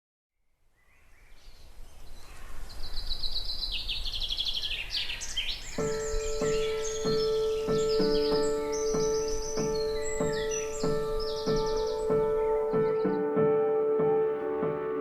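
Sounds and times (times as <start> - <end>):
songbirds trilling and chirping: 0.7 - 13.4
music with light beat: 5.8 - 15.0.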